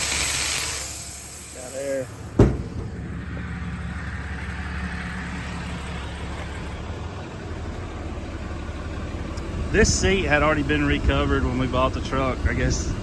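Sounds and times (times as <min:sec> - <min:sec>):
truck diesel engine idling: 0:00.0 - 0:13.0
sharp thump: 0:02.2 - 0:03.5.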